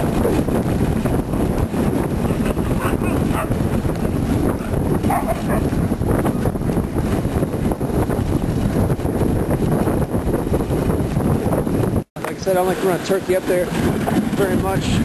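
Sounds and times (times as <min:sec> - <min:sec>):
wind rushing on microphone: 0:00.0 - 0:15.0
dogs barking and yipping: 0:02.3 - 0:03.6, 0:04.6 - 0:05.7.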